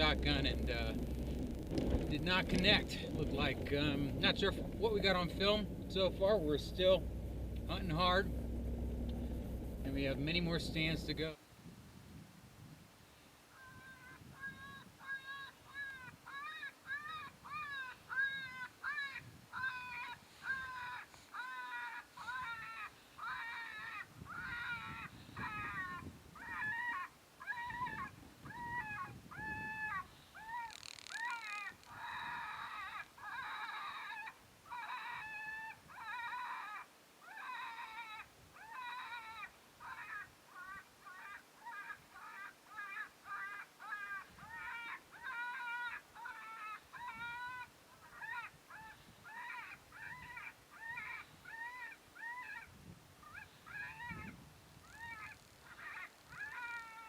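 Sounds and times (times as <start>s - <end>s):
animal distress cries from caller: 13.6s - 57.0s.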